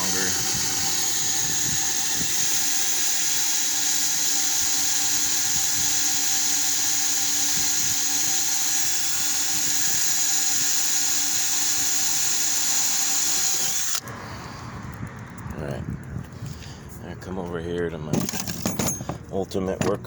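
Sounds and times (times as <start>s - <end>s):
power drill drilling into metal: 0.0s - 14.0s.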